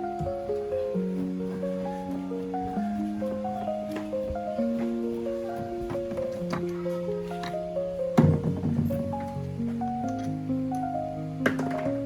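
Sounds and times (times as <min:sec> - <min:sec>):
melody of held notes: 0:00.0 - 0:12.0
short knocks: 0:08.2 - 0:09.4.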